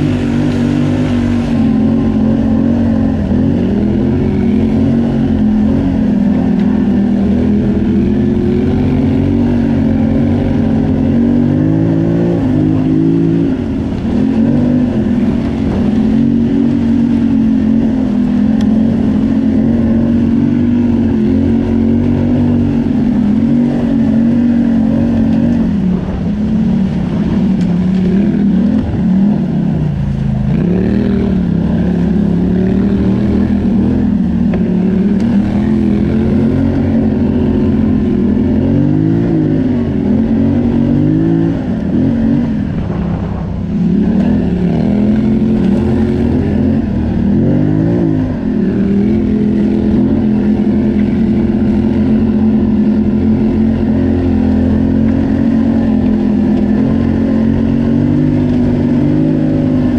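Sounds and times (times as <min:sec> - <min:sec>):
atv engine running: 0:00.0 - 0:59.9.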